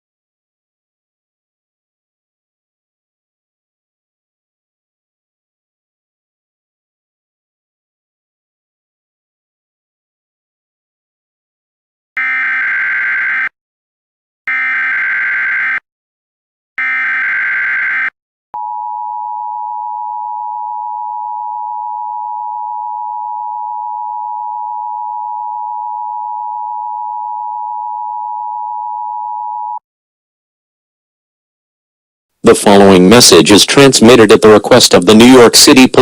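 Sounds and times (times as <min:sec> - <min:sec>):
digital data bursts: 0:16.8 - 0:18.1.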